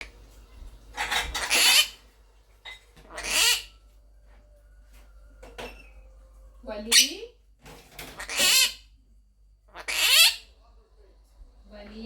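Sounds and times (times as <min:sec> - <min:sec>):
parrot raspy calls: 0:01.0 - 0:02.0, 0:03.0 - 0:03.7, 0:08.2 - 0:08.9, 0:09.7 - 0:10.5.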